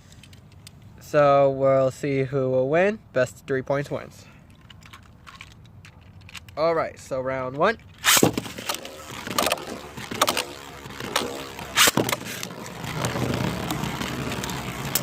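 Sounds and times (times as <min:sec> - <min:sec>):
spinning tops clacking: 0:08.0 - 0:15.0
spinning tops whirring: 0:08.0 - 0:15.0.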